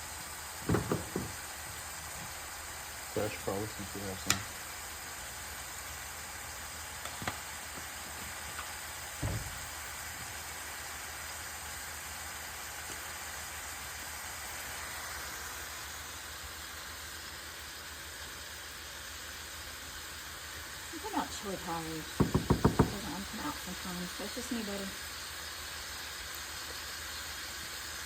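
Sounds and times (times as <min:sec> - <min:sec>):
dull knock: 0:00.6 - 0:01.4, 0:09.2 - 0:09.6, 0:22.2 - 0:23.2
meat sizzling in a frying pan: 0:12.7 - 0:21.8, 0:23.8 - 0:28.0.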